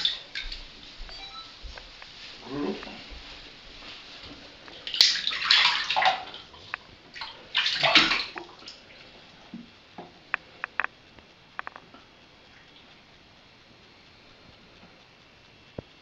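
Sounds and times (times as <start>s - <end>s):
water splashing in bathtub: 0.0s - 0.8s, 2.2s - 10.1s
small knocks: 9.5s - 10.9s.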